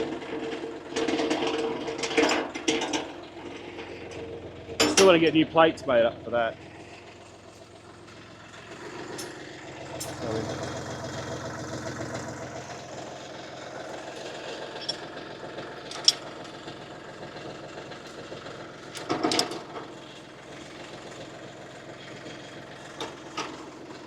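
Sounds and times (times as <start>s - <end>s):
tractor engine idling: 0.0s - 24.0s
clatter of knocks: 0.1s - 5.2s, 14.2s - 16.8s, 17.9s - 20.0s.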